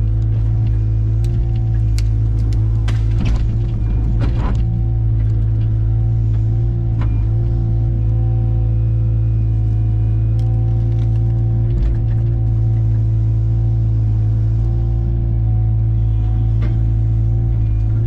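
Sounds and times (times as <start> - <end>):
diesel engine running: 0.0 - 18.0
sharp knocks and cracks: 1.2 - 4.7.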